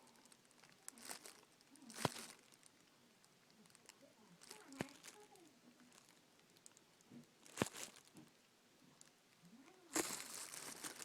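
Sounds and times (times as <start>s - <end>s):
small objects being handled: 0.0s - 2.8s, 3.5s - 6.8s, 7.4s - 8.3s, 9.8s - 11.0s.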